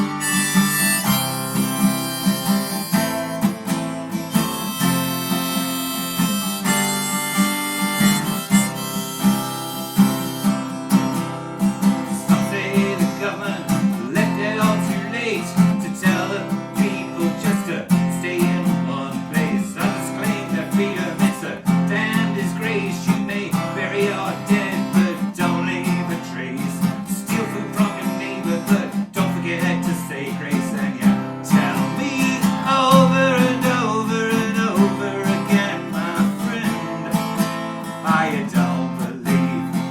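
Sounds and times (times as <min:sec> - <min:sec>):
harmonica melody: 0:00.0 - 0:13.6
acoustic guitar strumming: 0:00.0 - 0:39.9.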